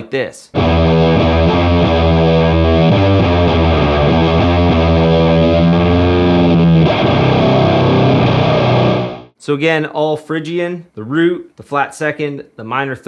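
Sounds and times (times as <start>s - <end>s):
distorted electric guitar riff: 0.6s - 9.4s.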